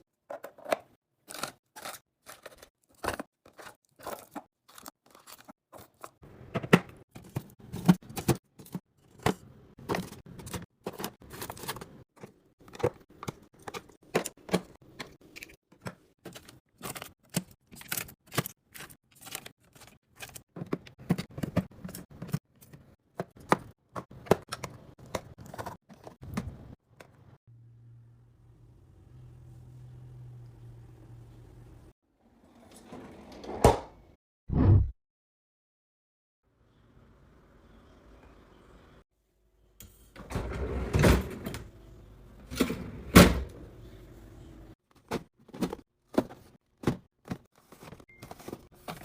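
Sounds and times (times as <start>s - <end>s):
rustling and scraping of packages: 1.3s - 26.8s, 44.9s - 49.0s.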